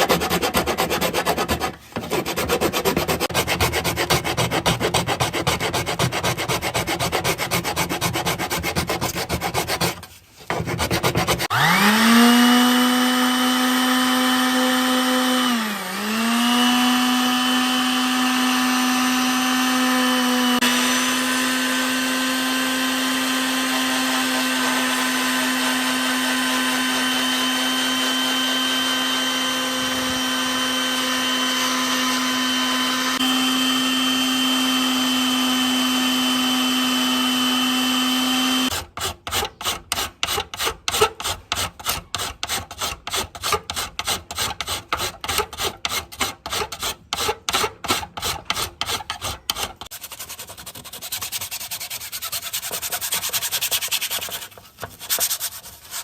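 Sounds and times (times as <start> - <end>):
hand sanding rubbing: 0.0 - 11.6, 22.6 - 36.7, 37.5 - 56.0
power tool motor whine: 11.5 - 38.7.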